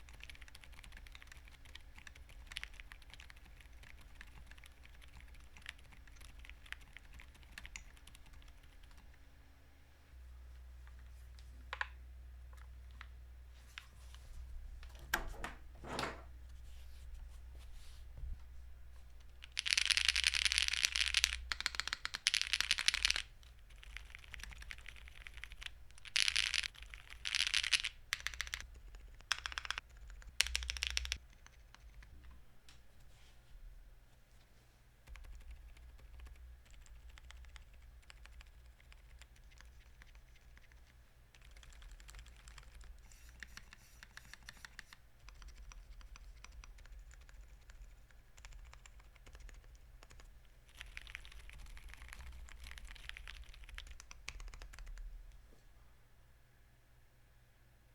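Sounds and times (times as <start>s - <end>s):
keyboard typing: 0.0s - 9.3s, 19.2s - 32.4s, 35.0s - 55.1s.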